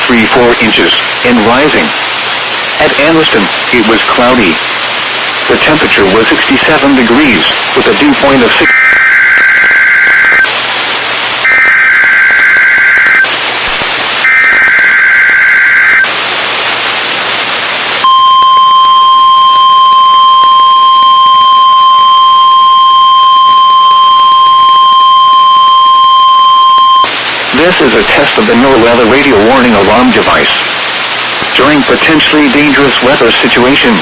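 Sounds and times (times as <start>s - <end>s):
radio hiss: 0.0s - 34.0s
screechy digital data bursts: 8.6s - 10.5s, 11.4s - 13.3s, 14.2s - 16.1s
steady warning alarm tone: 8.6s - 10.5s, 11.4s - 13.3s, 14.2s - 16.1s, 18.0s - 27.1s.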